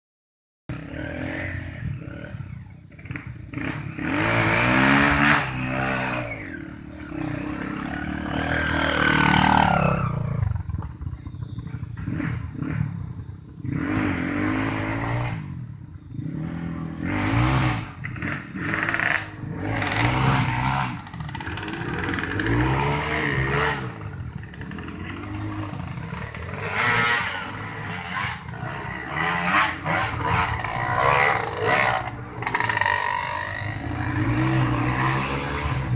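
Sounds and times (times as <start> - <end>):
motorcycle engine revving: 0.7 - 35.9.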